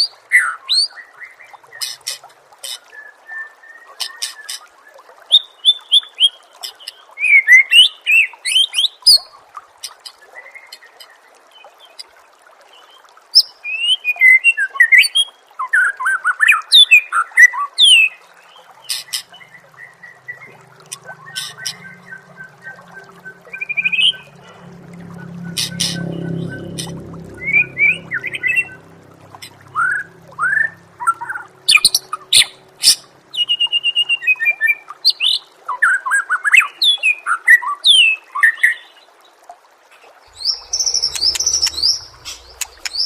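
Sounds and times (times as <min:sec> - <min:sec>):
steady low hum: 0:19.1 - 0:33.4, 0:40.3 - 0:43.0
songbird whistles and chattering: 0:40.4 - 0:43.0.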